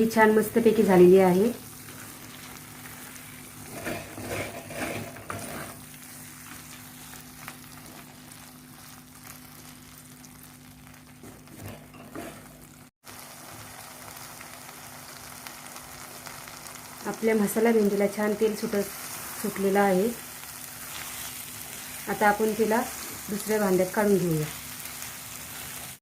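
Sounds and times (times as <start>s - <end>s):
food sizzling in oil: 0.0s - 26.0s
stirring scrapes: 1.8s - 5.8s.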